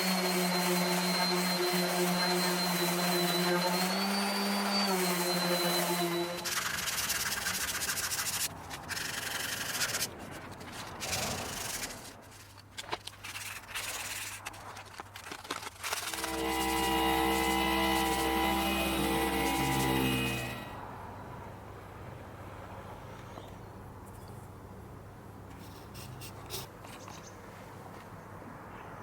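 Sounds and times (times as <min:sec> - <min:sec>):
power sander motor: 0:00.0 - 0:07.5, 0:15.9 - 0:20.8
sandpaper rubbing on wood: 0:00.0 - 0:12.5, 0:15.8 - 0:20.6.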